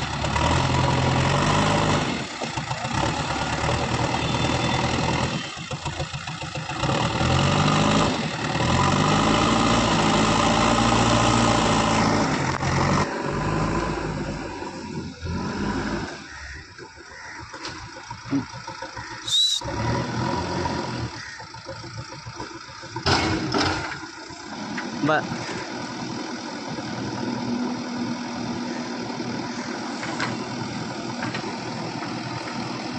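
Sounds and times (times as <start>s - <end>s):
diesel engine revving: 0.0s - 32.9s.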